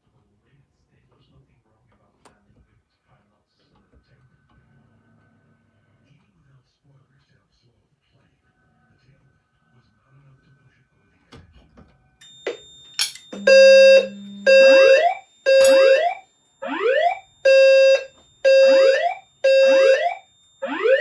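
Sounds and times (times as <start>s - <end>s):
low horn tone pulsing: 13.4s - 15.8s.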